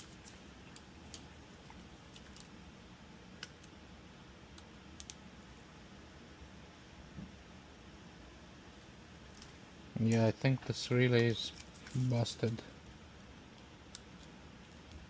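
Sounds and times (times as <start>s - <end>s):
quiet room hiss: 0.0s - 15.0s.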